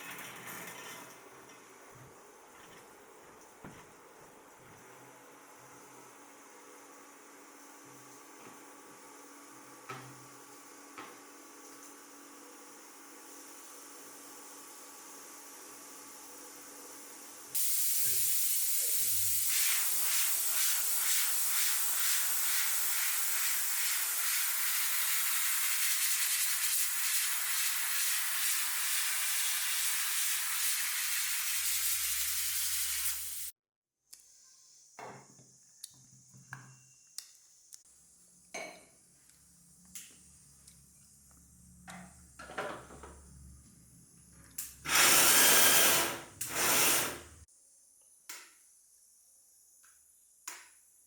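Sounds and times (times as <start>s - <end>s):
food sizzling in hot oil: 17.5s - 33.6s.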